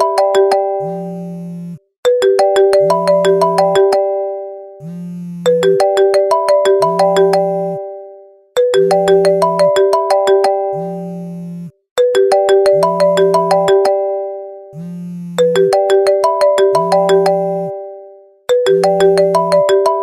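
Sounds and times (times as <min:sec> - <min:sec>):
phone vibration buzzing: 0:00.0 - 0:01.9, 0:04.8 - 0:07.9, 0:08.9 - 0:11.8, 0:14.7 - 0:17.8
melodic phone ringtone: 0:00.0 - 0:14.8, 0:15.4 - 0:20.0.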